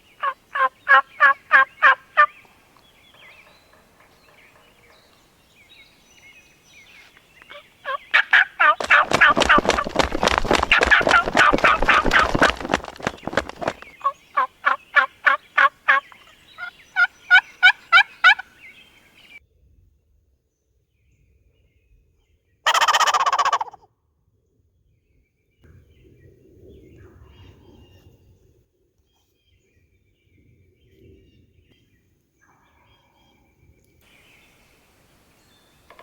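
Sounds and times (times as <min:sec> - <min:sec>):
turkey cackle call: 0:00.1 - 0:02.4, 0:07.5 - 0:18.5, 0:22.7 - 0:23.8
turkey hen yelps: 0:00.2 - 0:02.3, 0:07.5 - 0:09.8, 0:14.4 - 0:18.4, 0:22.7 - 0:23.8
turkey gobble: 0:00.2 - 0:02.4, 0:07.5 - 0:18.5, 0:22.7 - 0:23.8
faint low rustle: 0:08.7 - 0:14.4.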